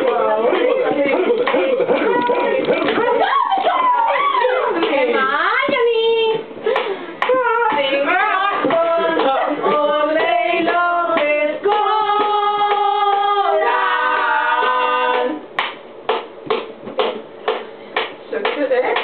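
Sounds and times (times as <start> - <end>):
voices singing a cappella: 7.3 - 15.5.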